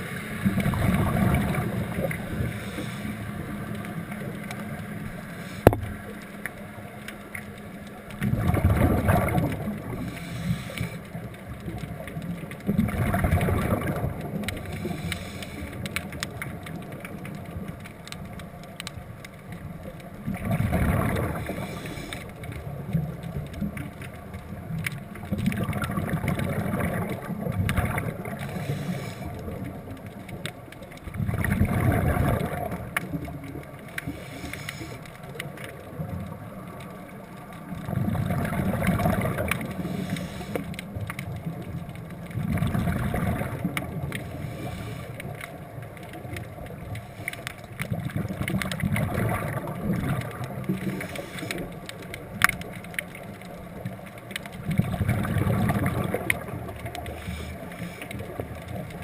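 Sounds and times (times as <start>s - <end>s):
underwater hiss: 0.0s - 4.2s, 4.9s - 6.1s, 8.4s - 11.3s, 13.4s - 16.1s, 20.4s - 22.5s, 26.4s - 29.8s, 33.9s - 35.2s, 38.3s - 40.9s, 42.5s - 45.6s, 46.9s - 47.6s, 50.6s - 52.0s, 55.2s - 58.9s
underwater bubbles gurgling: 0.0s - 59.0s.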